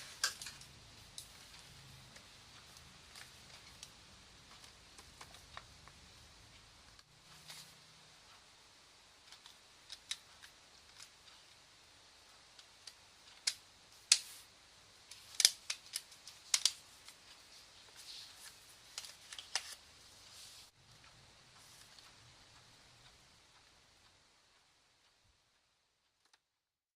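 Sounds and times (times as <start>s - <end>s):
plastic phone parts clicking: 15.1s - 16.8s.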